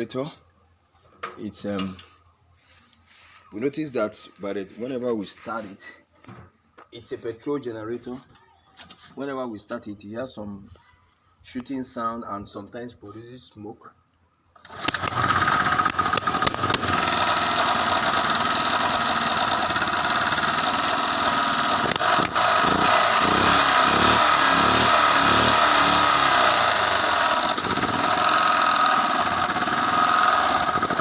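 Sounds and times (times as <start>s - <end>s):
generator engine running: 14.7s - 31.0s.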